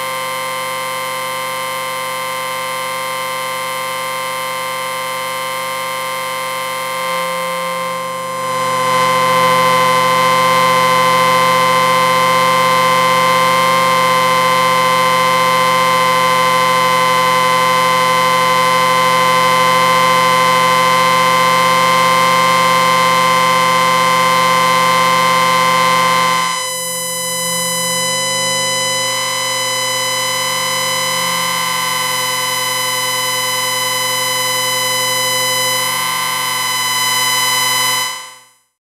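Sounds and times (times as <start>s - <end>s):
electric hum drone: 0.0s - 38.4s.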